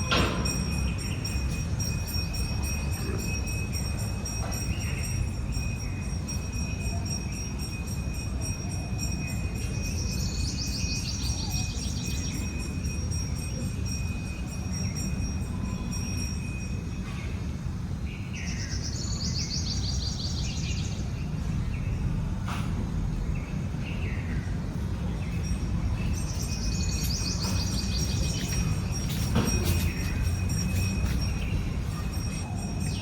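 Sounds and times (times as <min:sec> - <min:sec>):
songbird trilling: 0:25.2 - 0:33.0
thin high tones: 0:25.3 - 0:33.0.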